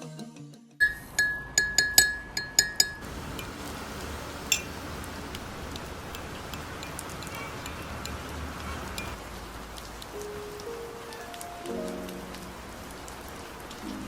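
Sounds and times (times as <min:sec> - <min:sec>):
glass-like kitchenware clinks: 0:00.8 - 0:03.5, 0:04.5 - 0:04.8
steady hiss: 0:03.0 - 0:14.0.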